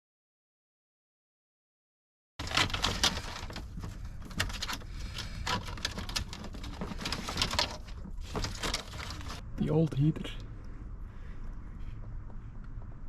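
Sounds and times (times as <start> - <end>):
clicks knocks and rattles: 2.4 - 9.4
steady low rumble: 2.8 - 13.0.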